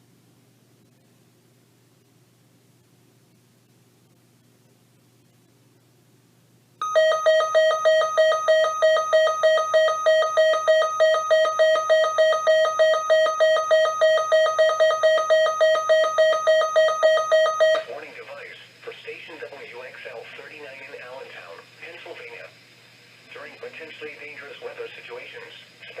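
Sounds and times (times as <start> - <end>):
shrill electronic alarm beeping: 6.8 - 17.8.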